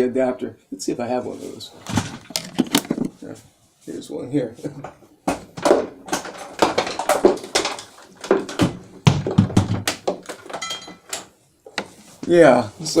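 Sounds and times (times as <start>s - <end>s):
plastic power strip clattering: 1.8s - 3.2s.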